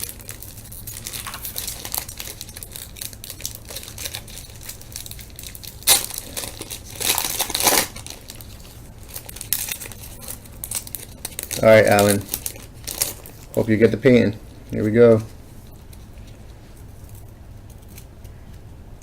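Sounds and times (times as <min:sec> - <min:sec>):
wrapper ripping: 0:00.0 - 0:15.2
wrapper crinkling: 0:00.0 - 0:18.3.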